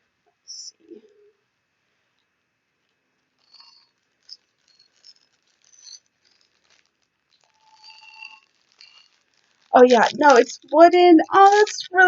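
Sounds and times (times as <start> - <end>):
packaging rattling and clicking: 3.4 - 12.0.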